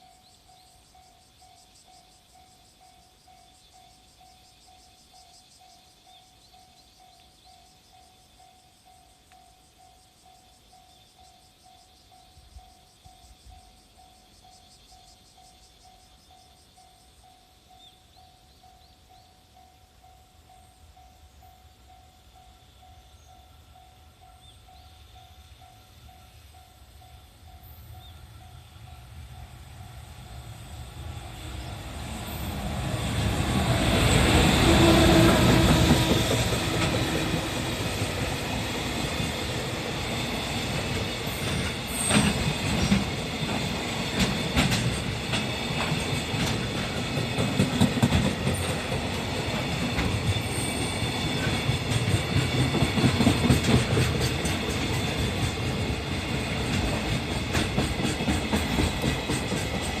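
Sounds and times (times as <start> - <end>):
electric locomotive passing: 0.0 - 60.0
wheels clattering over rail joints: 31.0 - 60.0.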